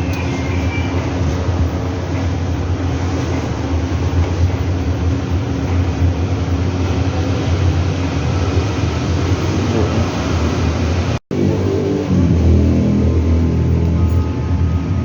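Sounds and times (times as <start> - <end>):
washing machine running: 0.0 - 15.0.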